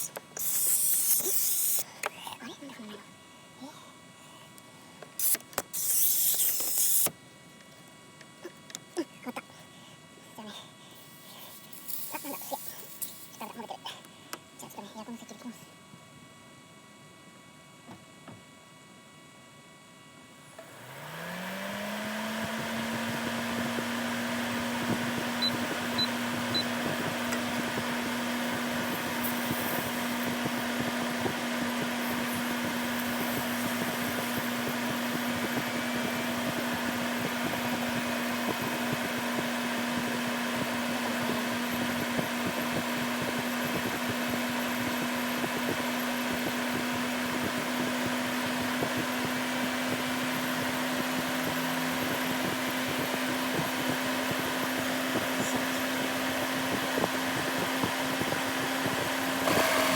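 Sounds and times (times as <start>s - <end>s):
air conditioning compressor hum: 0.0s - 59.9s
blower fan rushing: 20.5s - 59.9s.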